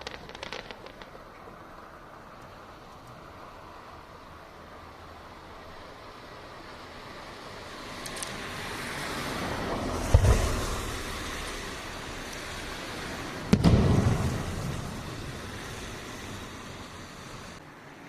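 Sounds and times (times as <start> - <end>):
fireworks booming: 0.0 - 1.2, 10.0 - 11.4, 13.2 - 17.6
firework hiss: 0.0 - 1.3, 7.4 - 17.6.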